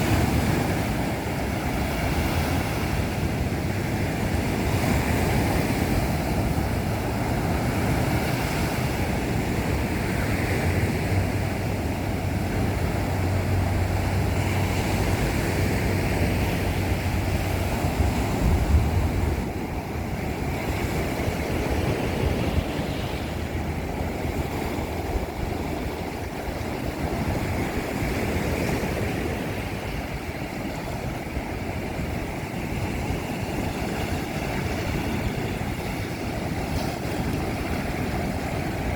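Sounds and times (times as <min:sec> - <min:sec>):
ocean waves breaking on beach: 0:00.0 - 0:38.9
wind rumbling on microphone: 0:00.0 - 0:38.9.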